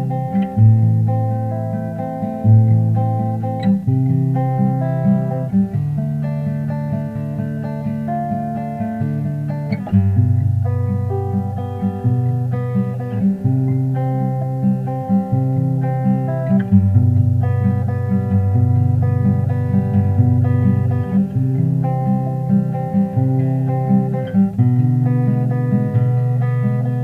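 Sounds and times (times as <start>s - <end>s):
acoustic guitar picking: 0.0s - 27.0s.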